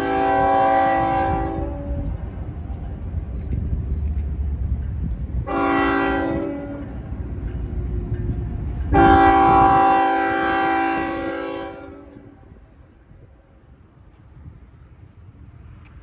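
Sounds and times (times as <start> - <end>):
locomotive air horn blasts: 0.0 - 2.2, 5.5 - 7.0, 8.9 - 12.6
passing train rumble: 0.0 - 16.0.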